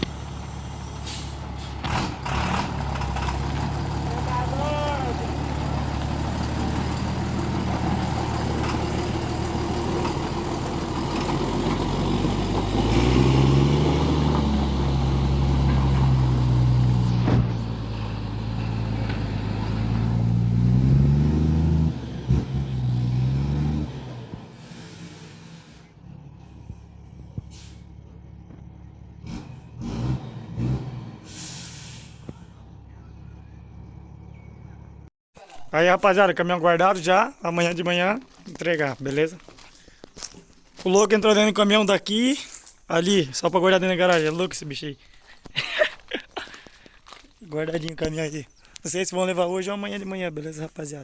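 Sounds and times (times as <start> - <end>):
truck diesel engine revving: 0.0 - 35.1
short hiss of air: 0.1 - 1.8, 24.6 - 25.9, 27.4 - 27.9, 31.2 - 32.4.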